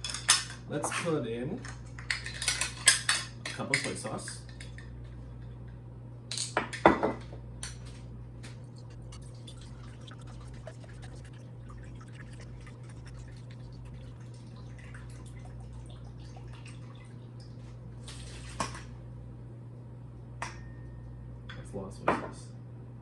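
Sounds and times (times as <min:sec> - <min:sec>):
liquid trickling: 0:08.5 - 0:18.8.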